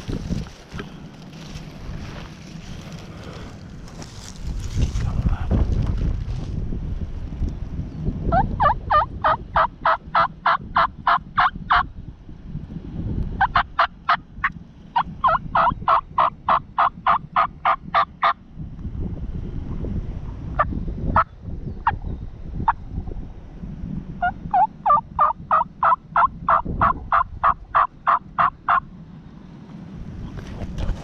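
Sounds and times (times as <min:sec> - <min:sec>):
low wind rumble: 0:00.0 - 0:31.0
turkey call yelps: 0:08.3 - 0:11.8, 0:15.0 - 0:18.4, 0:24.2 - 0:28.8.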